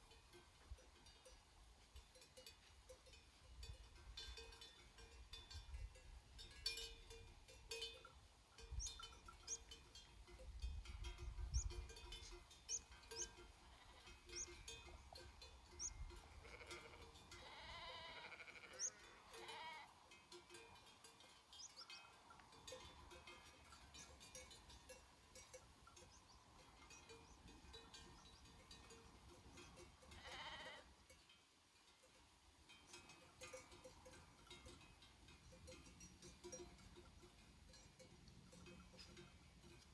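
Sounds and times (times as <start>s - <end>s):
sheep bells clinking: 0.0s - 39.9s
sheep bleating: 13.6s - 14.5s, 15.8s - 19.9s, 30.1s - 30.9s.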